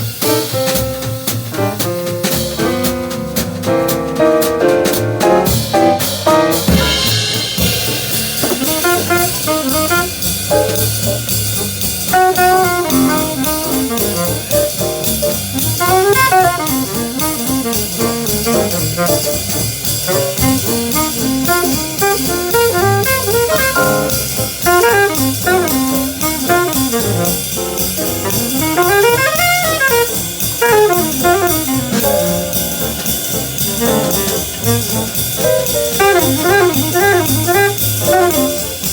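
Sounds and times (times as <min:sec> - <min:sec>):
drum kit: 0:00.0 - 0:38.9
jazz band playing: 0:00.0 - 0:38.9
horn soloing in quick runs: 0:08.6 - 0:10.4, 0:12.1 - 0:38.9.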